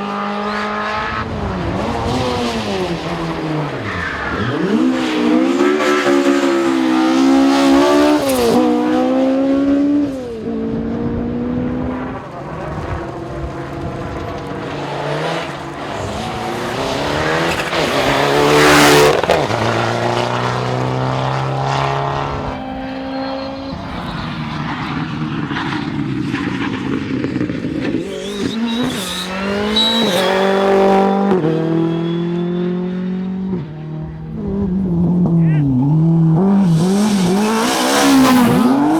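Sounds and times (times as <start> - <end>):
rally car engines revving: 0.0 - 38.9.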